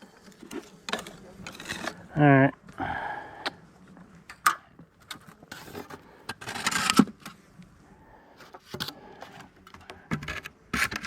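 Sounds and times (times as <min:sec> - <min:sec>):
boards scraping: 0:00.0 - 0:02.2.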